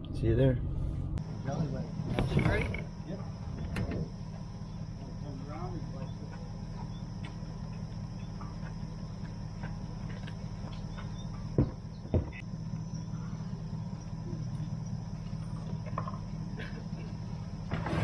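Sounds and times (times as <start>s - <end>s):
road noise: 0.0s - 18.0s
vehicle engine drone: 0.0s - 18.0s
sharp knocks: 11.5s - 12.4s.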